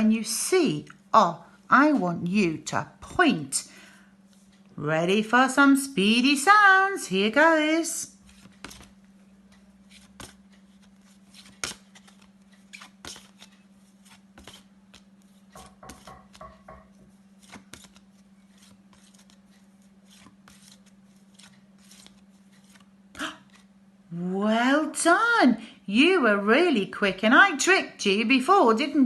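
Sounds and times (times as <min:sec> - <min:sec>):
flashcards flipping: 0:08.2 - 0:09.0, 0:09.8 - 0:16.4, 0:17.4 - 0:23.7.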